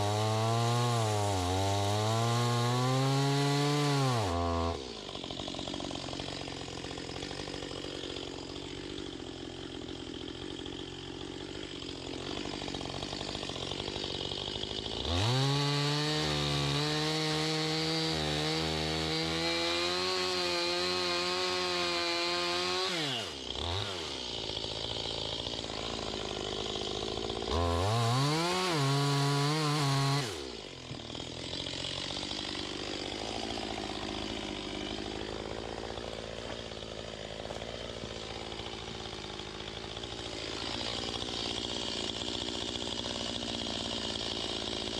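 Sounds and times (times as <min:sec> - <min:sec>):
chainsaw revving: 0:00.0 - 0:44.9.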